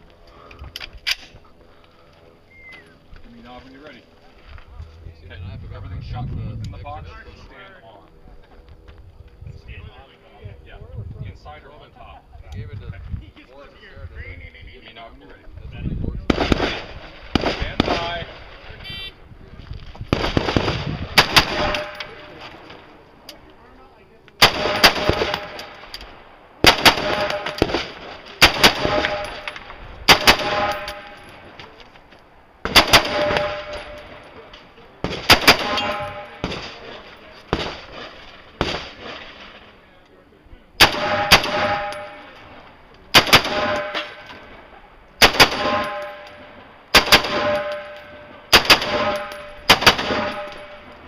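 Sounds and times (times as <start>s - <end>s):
rifle shots in quick pairs: 16.3s - 18.6s, 20.1s - 22.3s, 24.4s - 25.9s, 26.6s - 31.2s, 32.6s - 34.2s, 35.0s - 39.6s, 40.8s - 42.3s, 43.1s - 44.4s, 45.2s - 50.9s
metal target ringing: 21.3s - 22.4s, 24.4s - 25.9s, 26.7s - 27.8s, 28.5s - 31.5s, 32.8s - 34.4s, 35.1s - 37.1s, 40.8s - 42.6s, 43.2s - 44.6s, 45.3s - 51.0s.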